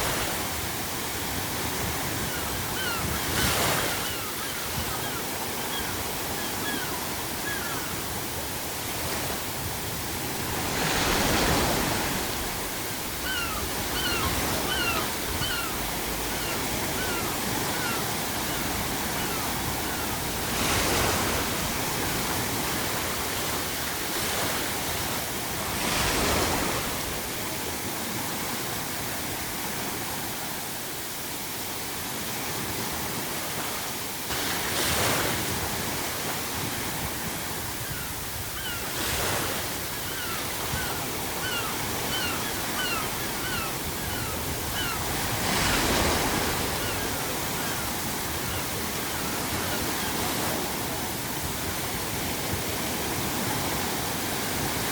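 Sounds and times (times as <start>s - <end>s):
ocean waves breaking on shore: 0.0s - 54.9s
seagull calls: 2.1s - 8.1s, 13.0s - 21.5s, 37.8s - 50.6s.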